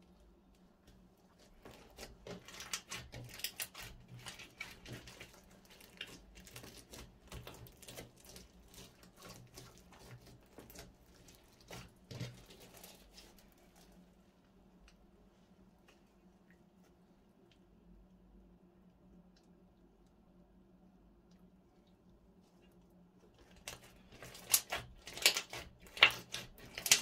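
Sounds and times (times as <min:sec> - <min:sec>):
slime squished by hand: 0:01.4 - 0:14.0.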